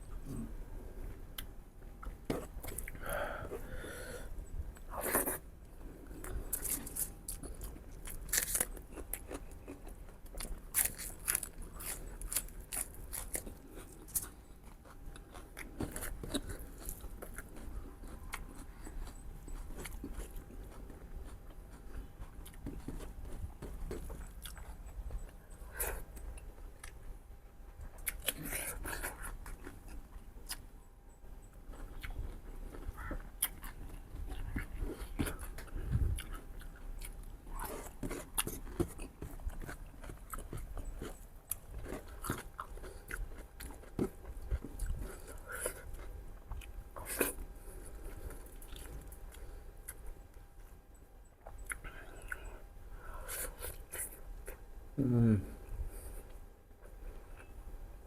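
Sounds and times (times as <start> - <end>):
food crunching: 6.1 - 27.0, 31.7 - 50.7
wet chewing and biting: 6.2 - 27.0, 31.7 - 50.5.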